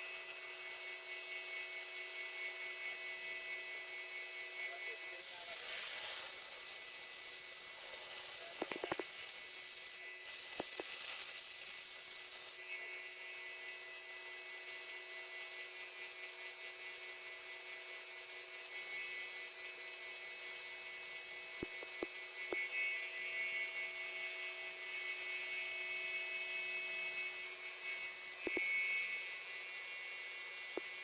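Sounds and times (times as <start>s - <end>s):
milling machine spindle whine: 0.2s - 16.6s.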